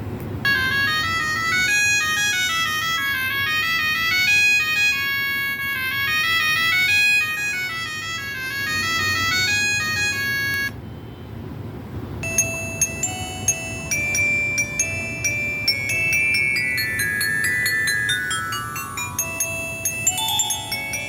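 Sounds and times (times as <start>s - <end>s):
electronic beeping ringtone: 12.2s - 21.0s
ringtone of struck notes: 12.2s - 21.0s.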